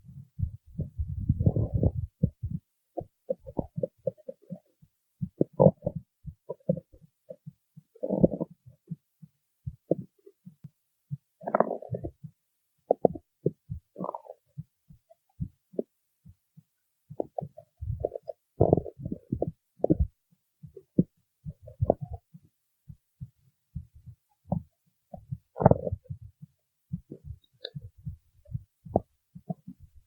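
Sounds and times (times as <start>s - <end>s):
stomach growling: 0.4s - 9.0s, 11.4s - 15.9s, 17.2s - 22.3s, 24.4s - 26.4s, 27.0s - 29.8s.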